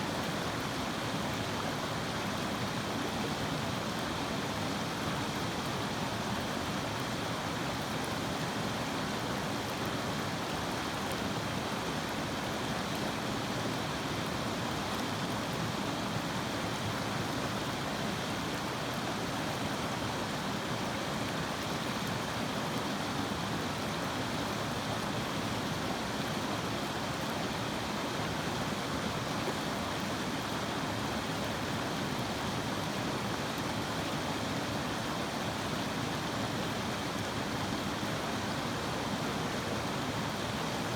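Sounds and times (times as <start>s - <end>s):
river water flowing: 0.0s - 40.9s.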